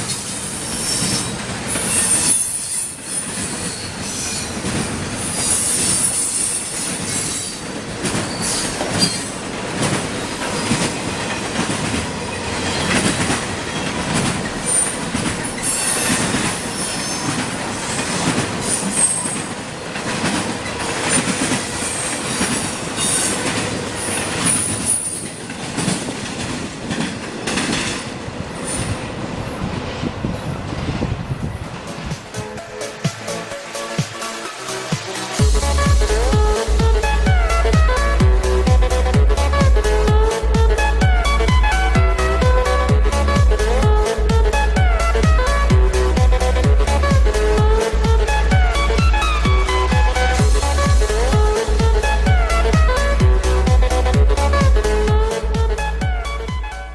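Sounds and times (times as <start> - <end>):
train wheels squealing: 0.0 - 26.1, 27.5 - 29.7
wheels clicking on rails: 0.0 - 34.4
freight train rumble: 0.0 - 56.9.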